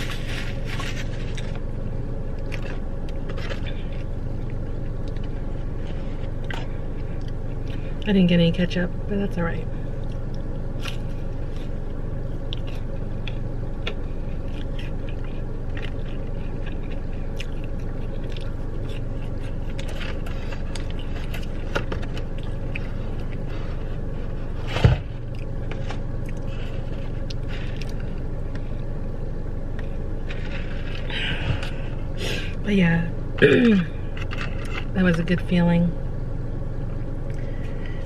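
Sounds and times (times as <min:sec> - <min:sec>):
car interior hum: 0:00.0 - 0:38.0
chewing: 0:02.3 - 0:08.1, 0:10.0 - 0:24.6, 0:25.2 - 0:28.9
clicks and scrapes of eating: 0:12.4 - 0:28.7.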